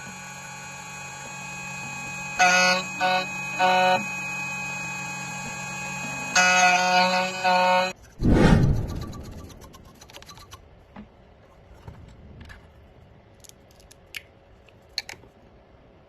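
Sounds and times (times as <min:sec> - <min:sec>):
cutter high-pitched whine: 0:00.0 - 0:10.5
motor humming: 0:00.0 - 0:10.6.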